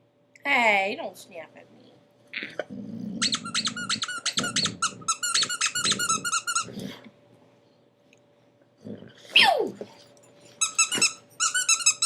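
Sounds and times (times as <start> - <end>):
dog growling: 2.3 - 7.2, 8.8 - 10.1
squeaky toy squeaks: 3.2 - 6.7, 10.6 - 12.0.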